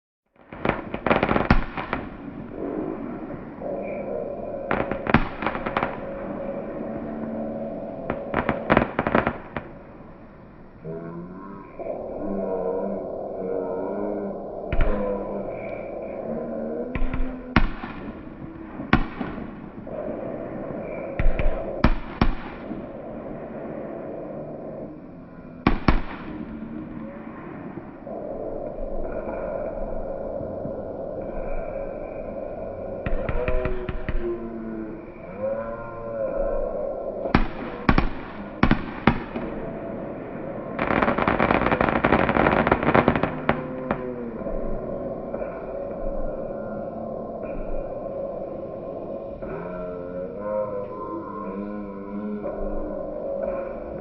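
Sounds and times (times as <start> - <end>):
firework shells bursting: 0.5 - 2.6, 4.7 - 7.4, 8.0 - 10.1, 25.6 - 26.8, 37.3 - 39.9, 40.7 - 44.2.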